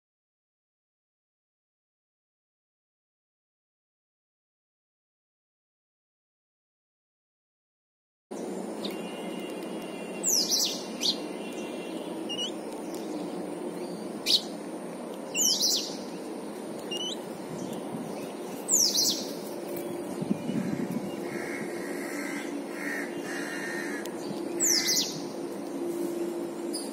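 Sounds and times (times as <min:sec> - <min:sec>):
low background noise: 0:08.3 - 0:26.9
small birds chirping: 0:08.3 - 0:26.9.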